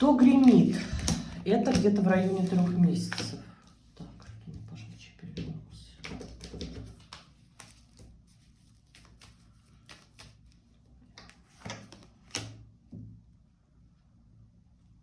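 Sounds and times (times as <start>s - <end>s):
cards clicking and tapping on table: 0.4s - 2.0s, 6.0s - 7.8s
cards snapping: 8.9s - 12.6s.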